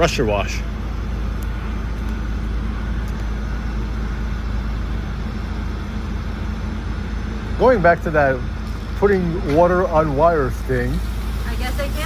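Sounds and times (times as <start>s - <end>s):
fire engine running: 0.0s - 12.0s
hose spraying water: 9.6s - 12.0s.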